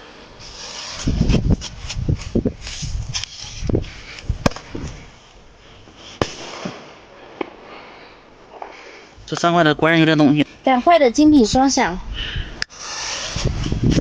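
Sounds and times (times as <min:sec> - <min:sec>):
firecracker bangs: 0:06.2 - 0:07.0.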